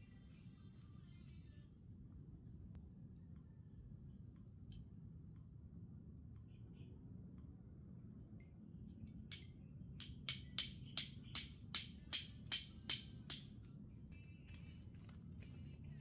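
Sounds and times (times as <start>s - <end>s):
sharp ringing taps: 9.3s - 13.5s.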